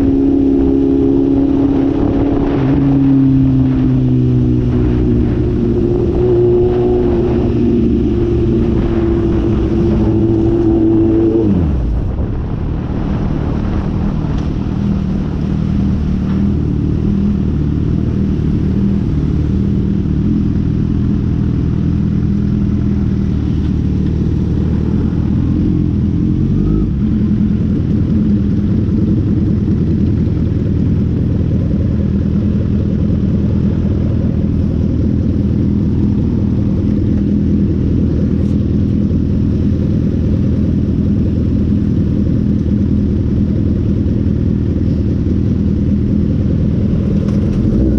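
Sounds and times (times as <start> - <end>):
wind noise on microphone: 0.0 - 19.0
motorcycle engine running: 0.0 - 47.9.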